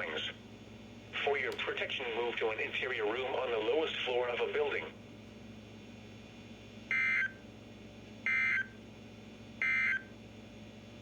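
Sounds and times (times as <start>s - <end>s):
faint radio hum and hiss: 0.0s - 7.2s.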